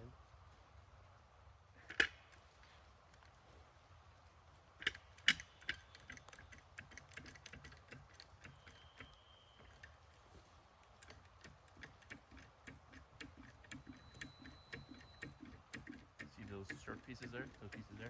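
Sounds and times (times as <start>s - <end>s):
light clicks and taps: 4.5s - 18.0s.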